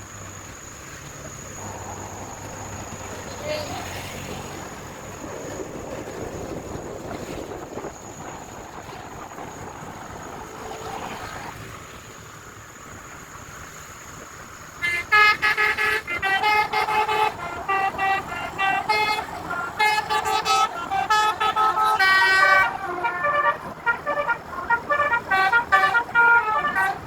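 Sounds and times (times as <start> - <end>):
multi-tone horn playing a tune: 14.8 - 27.0.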